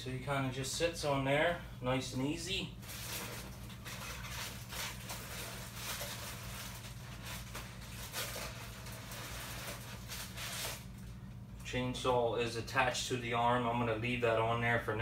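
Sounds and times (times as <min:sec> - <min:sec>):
steady low hum: 0:00.0 - 0:15.0
wrapping rustling: 0:02.8 - 0:11.2.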